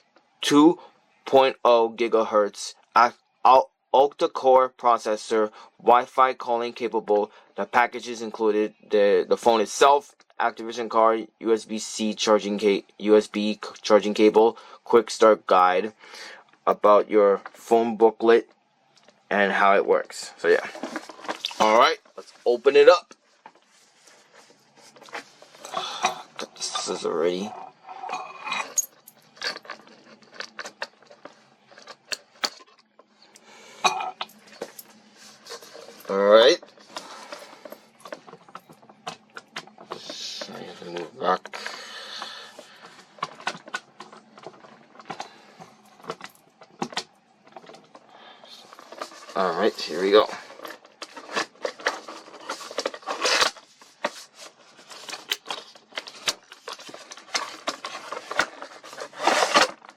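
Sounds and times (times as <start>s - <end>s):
packaging rustling: 41.5s - 59.9s.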